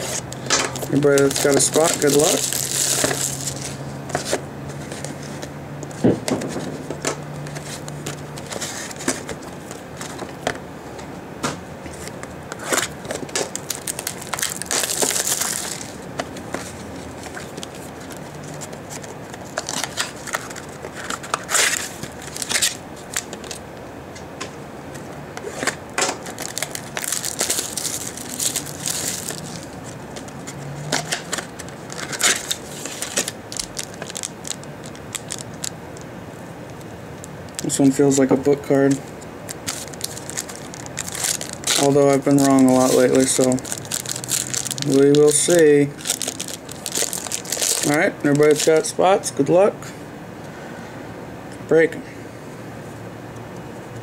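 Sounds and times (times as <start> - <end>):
wrapping crinkling and tearing: 0.0 - 4.4, 12.0 - 23.6, 25.4 - 36.1, 36.8 - 48.9
cardboard rustling: 0.0 - 10.6, 11.9 - 23.6, 25.4 - 35.7, 38.7 - 48.8.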